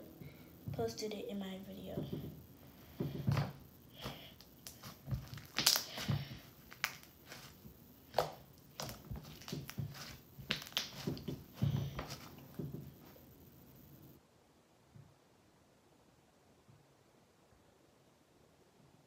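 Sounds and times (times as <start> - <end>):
slime squishing and popping: 3.2 - 12.7.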